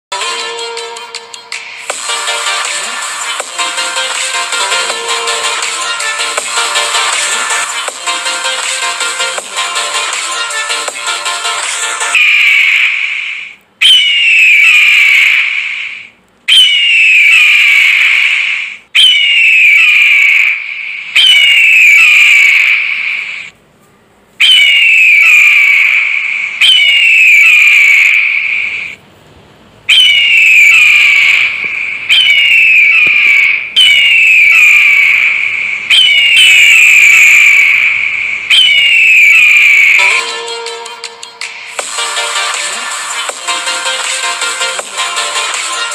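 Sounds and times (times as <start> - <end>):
electronic music: 0.1 - 12.6, 38.6 - 45.9
eagle screeching: 12.2 - 23.5, 24.4 - 29.0, 29.9 - 40.2.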